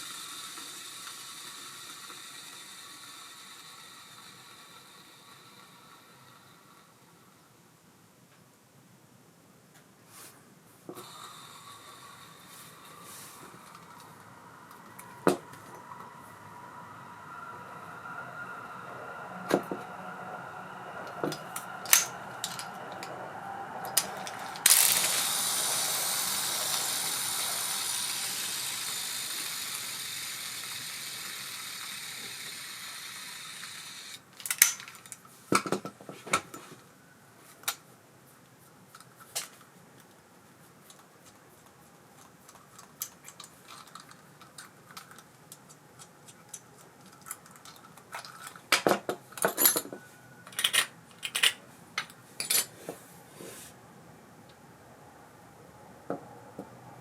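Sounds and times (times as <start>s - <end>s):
fishing reel spool whirring: 0.0s - 7.0s, 11.0s - 34.3s.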